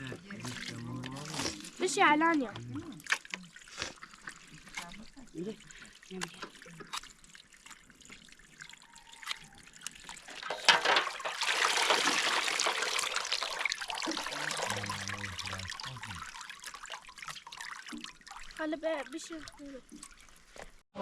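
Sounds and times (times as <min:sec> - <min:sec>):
water pouring and trickling: 0:00.0 - 0:20.8.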